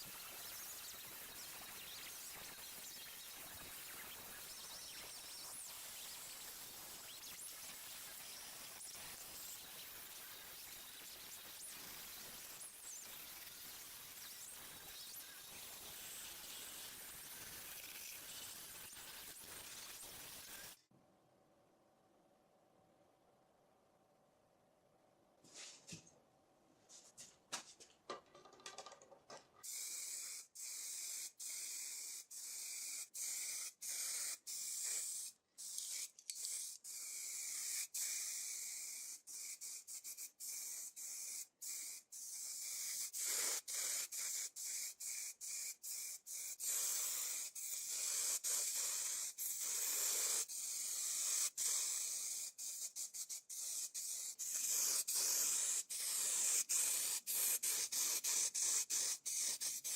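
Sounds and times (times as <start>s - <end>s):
paint spray hissing: 0.0s - 20.8s, 29.6s - 59.9s.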